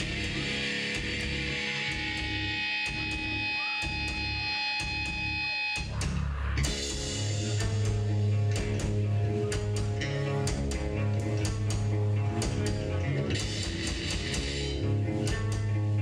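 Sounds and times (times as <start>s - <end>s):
cymbal strikes: 0.0s - 5.9s
death metal band playing: 0.0s - 16.0s.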